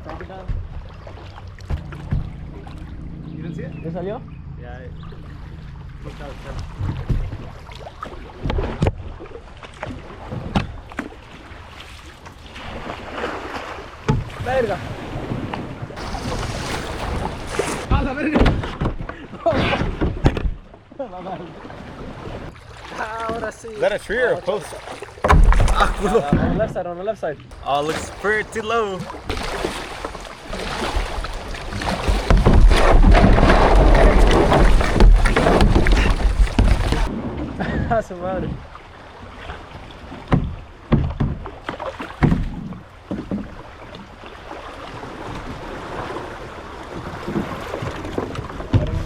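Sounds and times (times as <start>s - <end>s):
paddle knocks and splashes: 0.0s - 2.8s, 6.6s - 20.8s, 21.6s - 26.7s, 27.5s - 37.8s, 38.4s - 49.0s
moving water: 0.0s - 26.7s, 27.4s - 49.0s
wind buffeting microphone: 30.8s - 37.6s.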